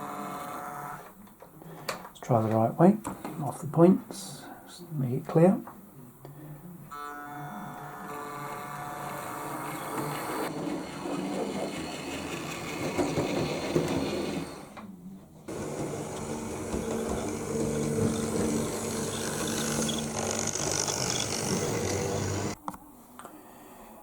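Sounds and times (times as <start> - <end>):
model train motors whirring: 7.9 - 14.8, 15.5 - 22.6.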